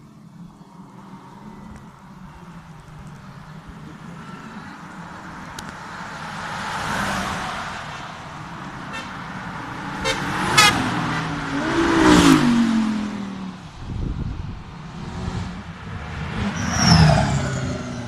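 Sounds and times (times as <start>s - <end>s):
race cars passing: 0.0s - 18.0s.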